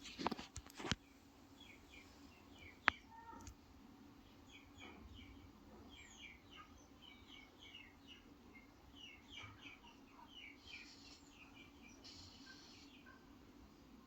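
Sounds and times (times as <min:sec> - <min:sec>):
bird chirps: 0:04.3 - 0:13.4.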